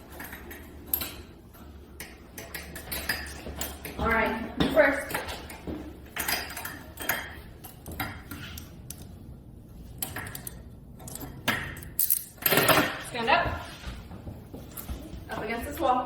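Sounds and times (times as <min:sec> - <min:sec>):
metal handcuffs clinking: 0:10.0 - 0:12.8.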